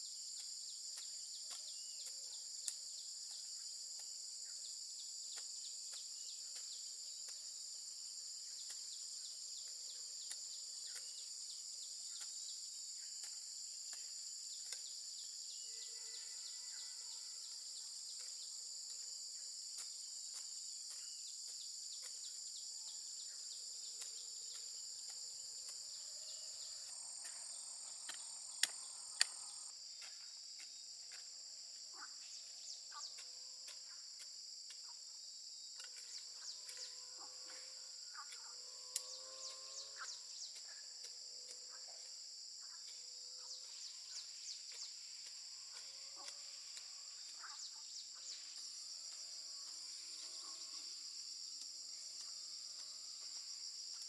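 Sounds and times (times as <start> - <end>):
high-pitched insect chorus: 0.0 - 54.0
faint clicks: 28.0 - 29.5
sharp clicks: 28.1 - 29.4.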